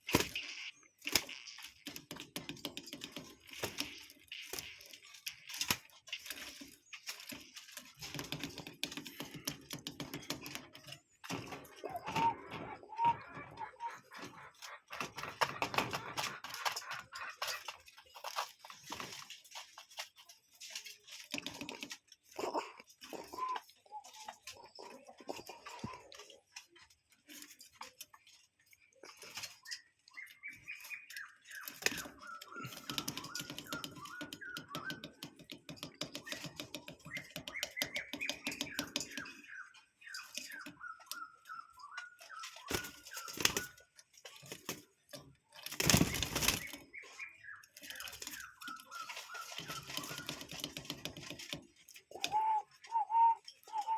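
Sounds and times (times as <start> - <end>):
small clicks and taps: 1.0 - 13.2, 19.7 - 29.5, 30.1 - 39.5, 47.6 - 52.4
bird calling repeated notes: 11.7 - 14.8, 52.0 - 53.9.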